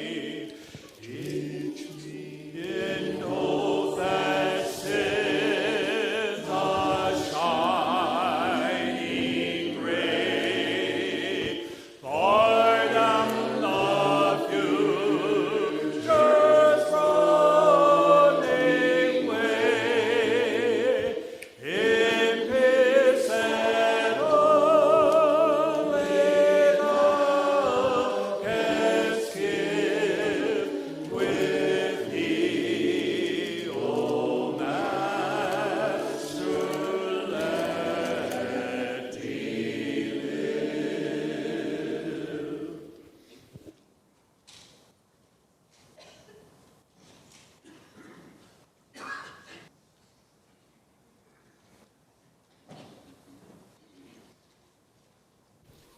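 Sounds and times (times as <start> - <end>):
group singing worship song: 0.0 - 43.4.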